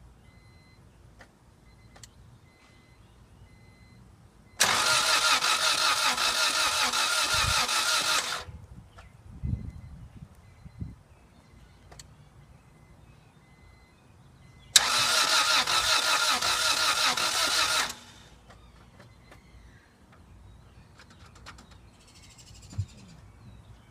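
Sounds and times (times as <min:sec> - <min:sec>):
engine cranking by starter: 0:04.6 - 0:08.5, 0:14.7 - 0:19.4.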